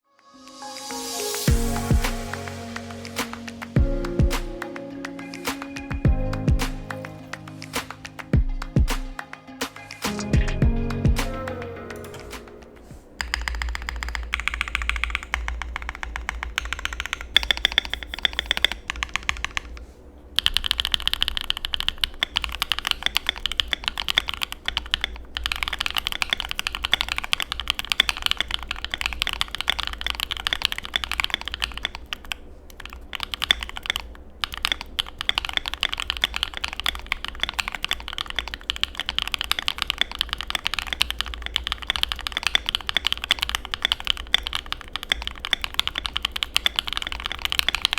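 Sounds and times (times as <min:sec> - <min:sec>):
mechanical keyboard key clacks: 0:13.2 - 0:19.8, 0:20.4 - 0:47.9.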